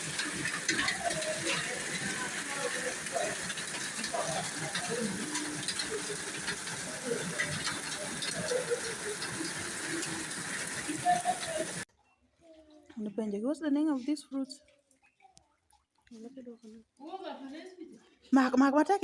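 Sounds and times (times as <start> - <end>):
steady rain: 0.0 - 11.9
faint distant voices: 0.0 - 13.2.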